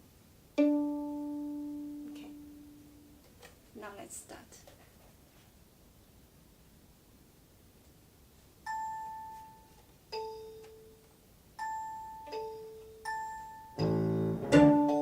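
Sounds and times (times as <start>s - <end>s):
plucked ringing notes: 0.6s - 3.0s, 12.2s - 15.0s.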